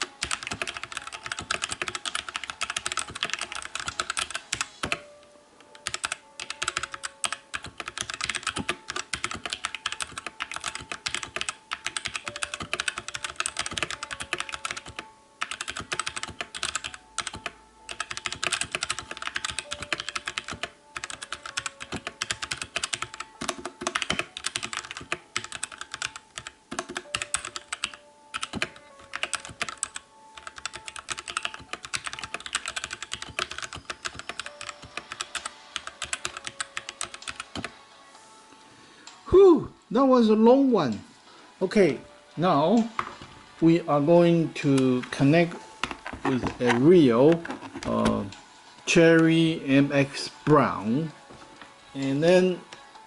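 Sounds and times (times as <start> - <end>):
mechanical keyboard typing: 0.0 - 5.0, 5.8 - 37.7.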